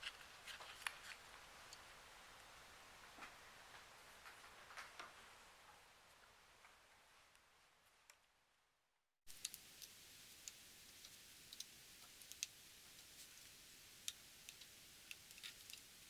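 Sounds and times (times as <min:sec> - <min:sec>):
steady low hiss: 0:00.0 - 0:08.1, 0:09.3 - 0:16.0
small clicks and taps: 0:09.3 - 0:15.9.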